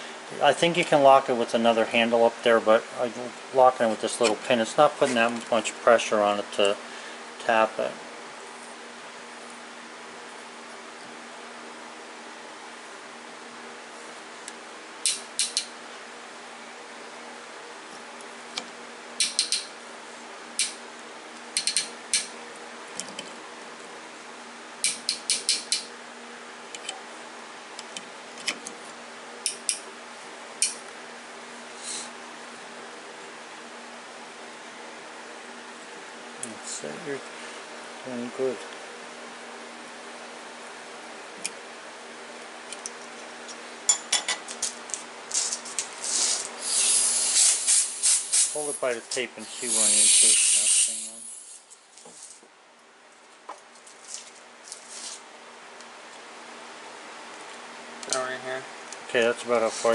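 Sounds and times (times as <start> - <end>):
steady low hum: 0.0 - 59.9
tap wrench metallic clicks: 19.2 - 19.7, 21.6 - 22.3.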